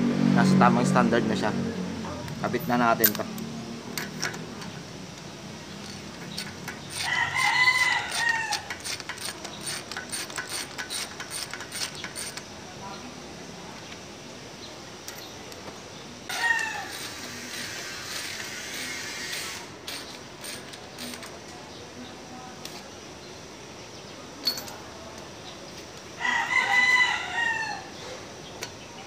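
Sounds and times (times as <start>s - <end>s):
rooster crowing: 6.9s - 8.7s, 16.3s - 17.3s, 26.2s - 28.0s.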